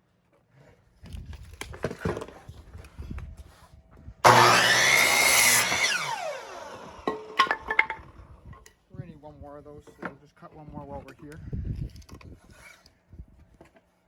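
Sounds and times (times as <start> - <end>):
power saw cutting wood: 4.2 - 7.7.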